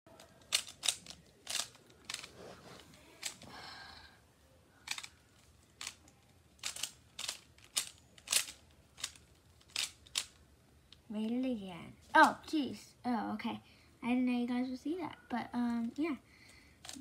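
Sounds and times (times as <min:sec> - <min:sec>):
plastic puzzle cube clicks: 0:00.2 - 0:02.3, 0:06.6 - 0:10.4.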